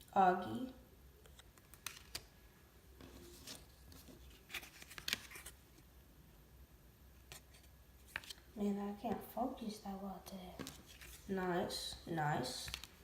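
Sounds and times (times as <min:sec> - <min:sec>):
cards being flipped: 0:01.2 - 0:02.3, 0:03.0 - 0:05.6, 0:07.3 - 0:08.5, 0:10.6 - 0:11.3, 0:12.6 - 0:13.0.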